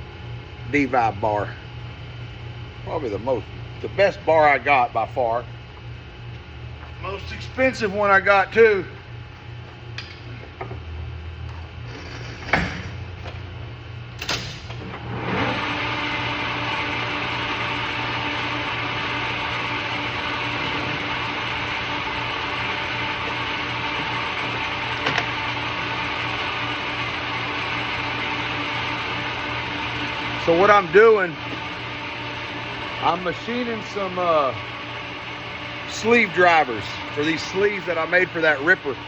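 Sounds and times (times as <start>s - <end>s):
metal lathe humming: 14.9s - 39.0s
lathe cutting steel: 15.0s - 39.0s.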